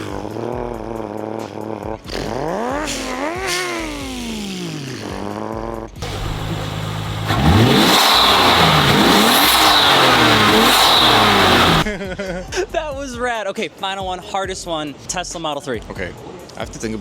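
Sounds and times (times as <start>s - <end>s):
man imitating engine revving: 0.0s - 11.9s.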